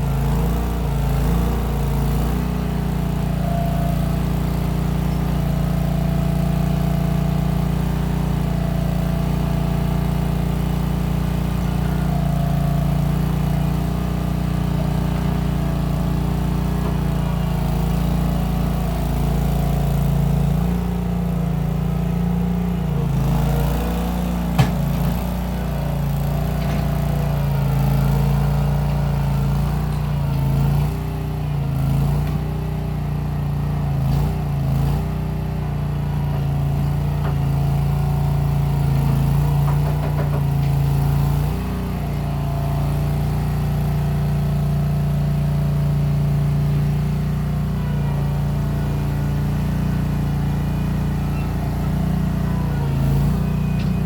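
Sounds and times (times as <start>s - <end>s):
skid steer engine running: 0.0s - 54.0s.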